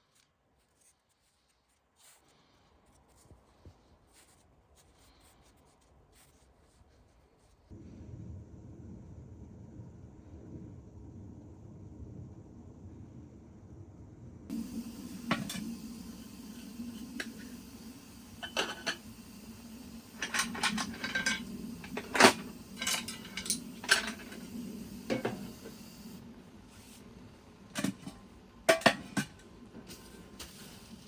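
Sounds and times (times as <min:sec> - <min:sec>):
low steady hum: 0:07.7 - 0:31.0
metal cookware clinking: 0:14.5 - 0:25.5, 0:27.8 - 0:29.4.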